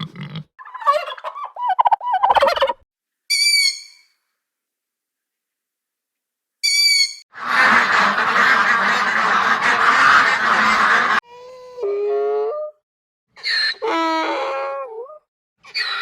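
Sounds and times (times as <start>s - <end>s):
pitched bird call: 0.8s - 4.1s
ducks or geese calling: 7.4s - 11.2s.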